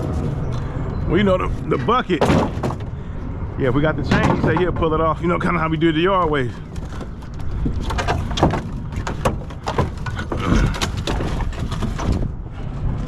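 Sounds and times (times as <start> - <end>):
wooden boards knocking and clattering: 2.1 - 3.0, 4.0 - 5.0, 6.5 - 12.4.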